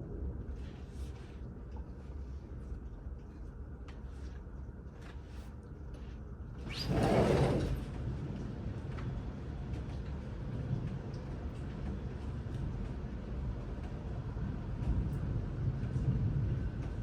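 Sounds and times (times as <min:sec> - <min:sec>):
thunder crack and rumble: 0:06.9 - 0:17.0.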